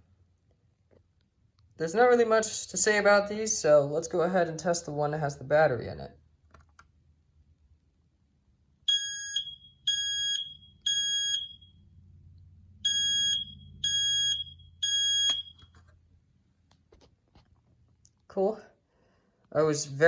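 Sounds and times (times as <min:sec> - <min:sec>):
smoke alarm beeps: 0:08.9 - 0:11.8, 0:12.8 - 0:15.7.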